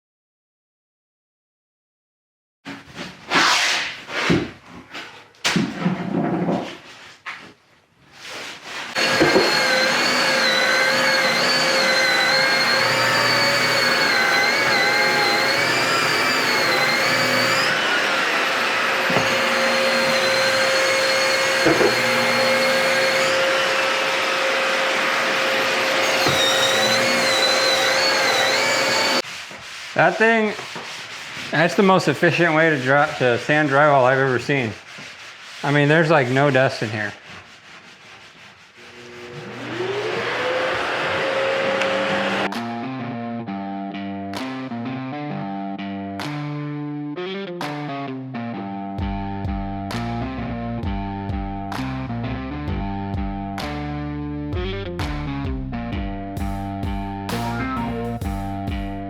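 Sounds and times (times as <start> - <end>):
drywall sander whining: 8.9 - 29.2, 38.8 - 42.6
dust extraction vacuum hum: 9.0 - 29.2, 38.8 - 42.5.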